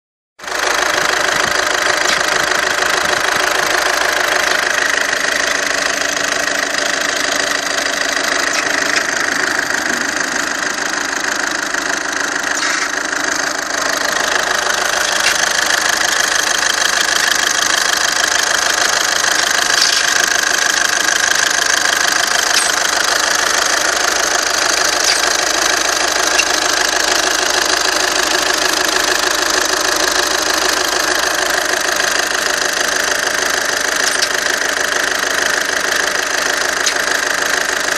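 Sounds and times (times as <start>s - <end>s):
engine running: 0.4s - 37.9s
squeak: 12.6s - 12.9s.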